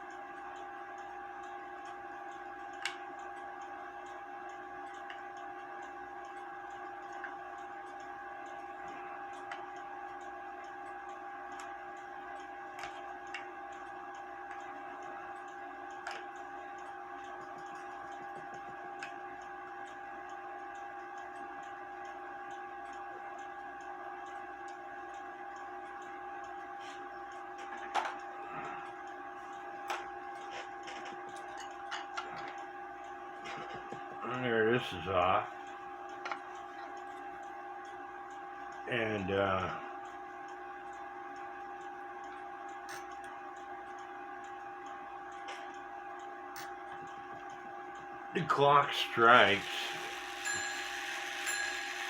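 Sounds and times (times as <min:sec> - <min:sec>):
high electrical hum: 0:25.1 - 0:52.0.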